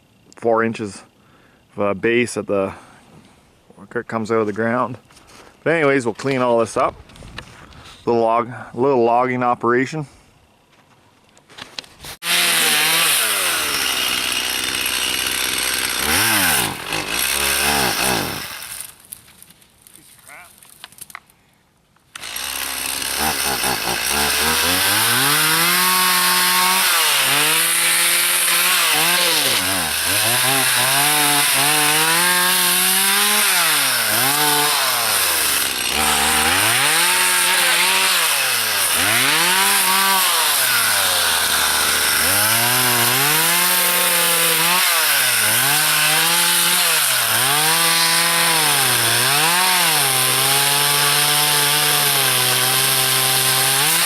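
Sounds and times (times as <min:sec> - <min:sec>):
chainsaw cutting wood: 0:11.8 - 0:19.2, 0:22.1 - 0:54.0.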